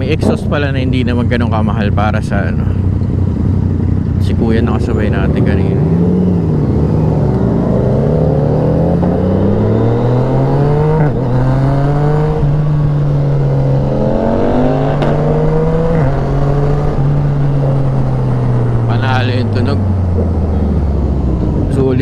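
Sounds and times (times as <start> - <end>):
motorcycle engine accelerating: 0.0 - 22.0.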